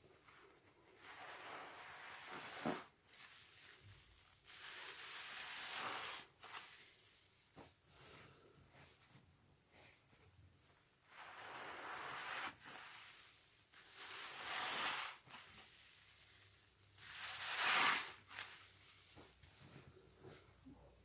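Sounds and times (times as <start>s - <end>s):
sponge squeezed hissing suds: 0.2s - 8.8s, 11.0s - 20.5s
foam crackling: 11.0s - 19.5s.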